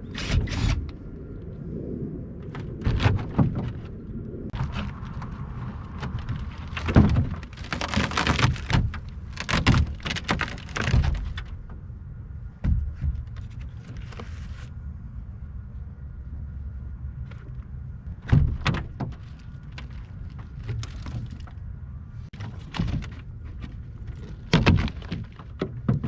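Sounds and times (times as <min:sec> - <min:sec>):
knocks and scrapes on boat: 0:02.4 - 0:11.9, 0:12.5 - 0:14.8, 0:17.2 - 0:21.6, 0:22.3 - 0:26.0.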